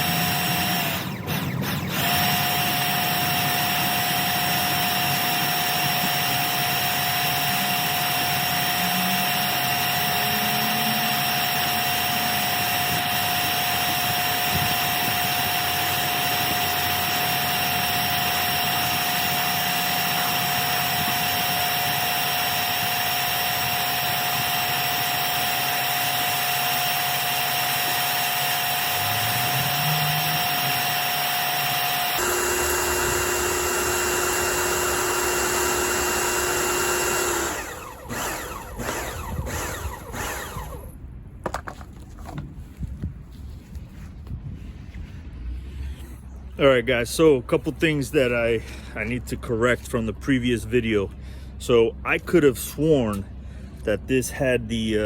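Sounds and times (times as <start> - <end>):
pressure washer motor whine: 0.0 - 41.0.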